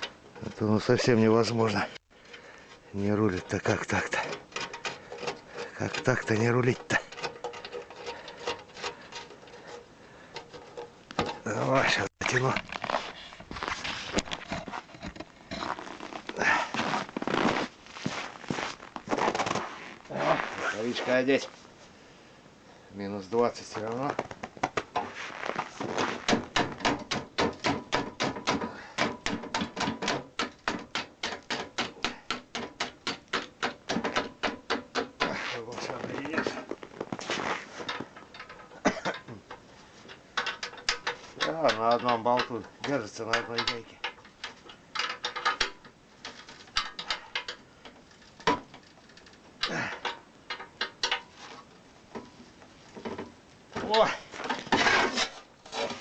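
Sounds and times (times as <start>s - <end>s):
metal tools clinking: 3.2s - 11.5s, 37.8s - 51.4s.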